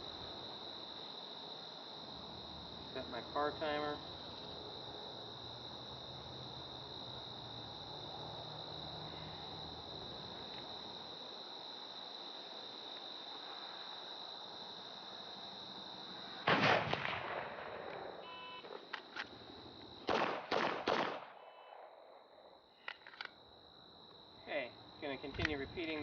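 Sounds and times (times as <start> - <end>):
crickets trilling: 0.0 - 26.0
loud sharp bang: 16.5 - 17.9
pistol shots: 16.5 - 18.1, 20.0 - 22.0.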